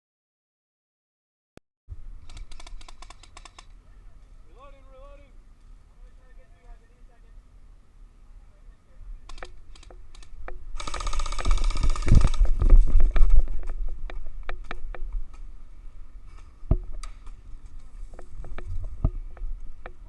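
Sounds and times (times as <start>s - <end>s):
airsoft full-auto burst: 2.2s - 3.8s, 9.3s - 12.7s.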